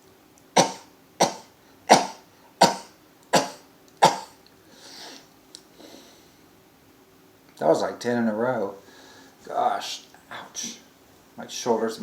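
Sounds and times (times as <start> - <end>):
man sneezing: 0.6 - 5.2.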